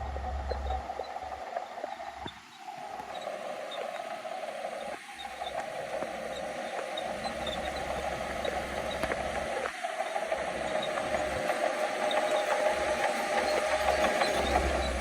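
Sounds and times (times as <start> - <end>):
bulldozer engine running: 0.0 - 0.8.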